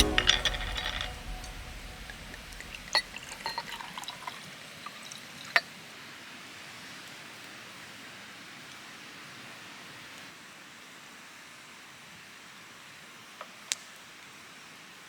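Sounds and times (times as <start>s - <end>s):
liquid pouring and trickling: 0.0s - 5.7s.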